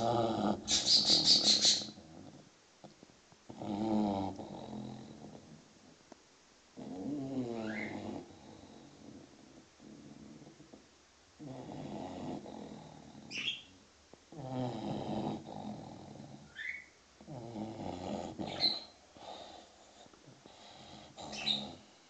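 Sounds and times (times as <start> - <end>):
puppy snoring: 0.0 - 6.0, 6.8 - 10.8, 11.4 - 22.0
high bird chirps: 0.7 - 1.9, 13.3 - 13.7, 16.6 - 16.9.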